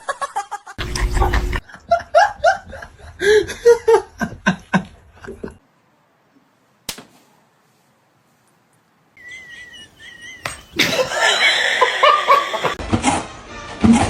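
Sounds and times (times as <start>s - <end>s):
people laughing: 9.2s - 12.8s.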